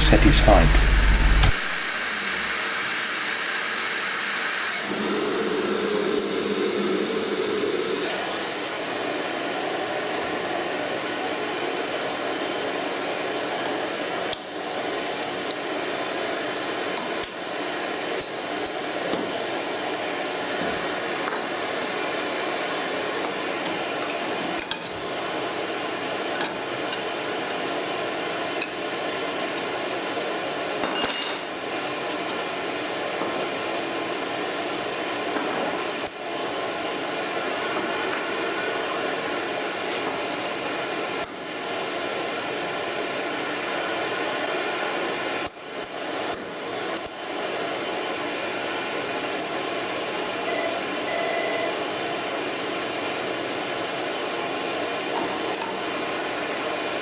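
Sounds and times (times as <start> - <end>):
brief clicks: 0.0 - 1.8
cnc router machinery humming: 0.0 - 2.6.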